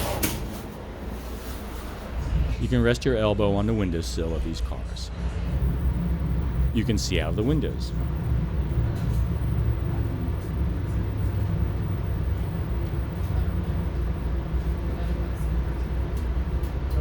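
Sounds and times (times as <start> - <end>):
train coach rumbling on rails: 4.2 - 17.0.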